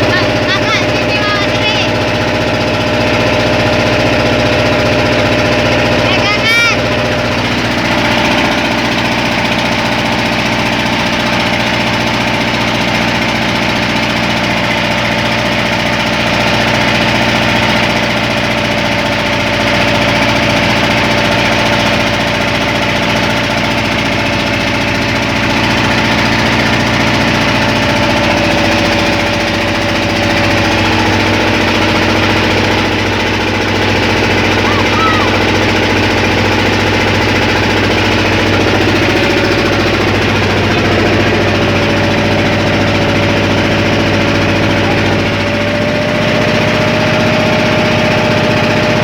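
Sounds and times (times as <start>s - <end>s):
boat engine running: 0.0s - 49.0s.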